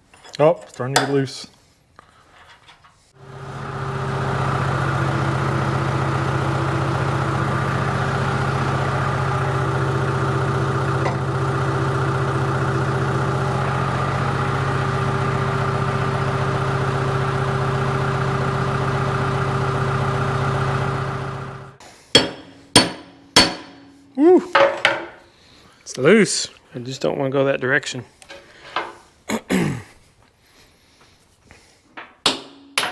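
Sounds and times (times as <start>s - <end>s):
engine humming steadily: 3.2s - 24.4s.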